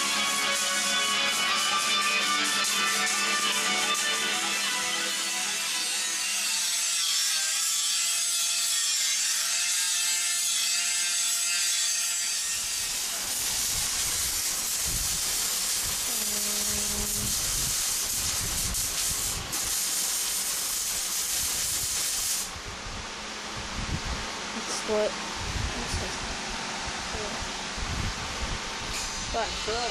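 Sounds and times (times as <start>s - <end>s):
compressed-air tool hissing: 12.7s - 22.5s.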